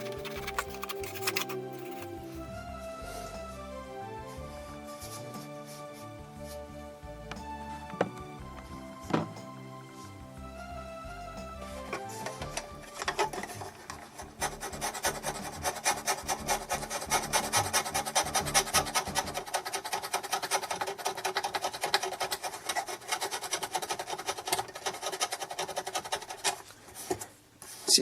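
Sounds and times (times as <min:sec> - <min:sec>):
scraper scraping plastic keys: 0:00.0 - 0:02.4.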